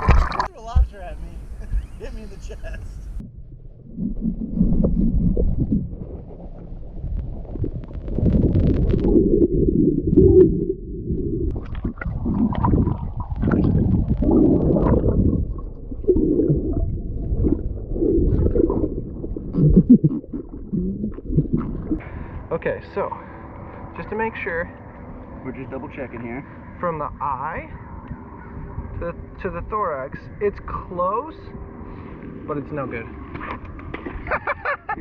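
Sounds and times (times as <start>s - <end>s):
muffled underwater water rumbling: 0.0s - 2.0s, 2.8s - 35.0s.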